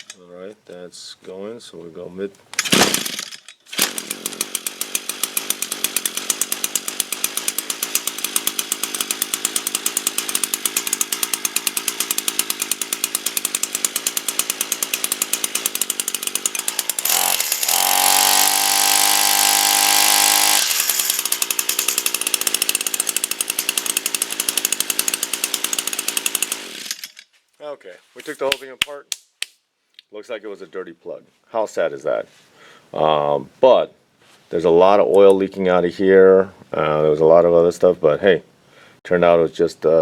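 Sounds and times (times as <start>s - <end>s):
string trimmer engine idling and revving: 2.9s - 27.1s.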